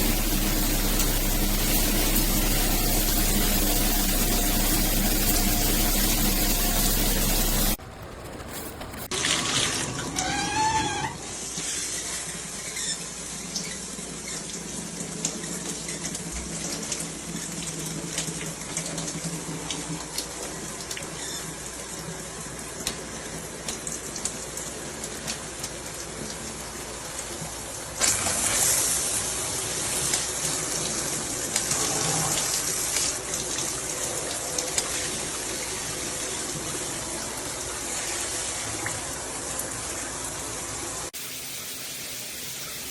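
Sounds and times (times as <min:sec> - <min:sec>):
water spraying from shower head: 0:00.0 - 0:07.8, 0:41.1 - 0:42.9.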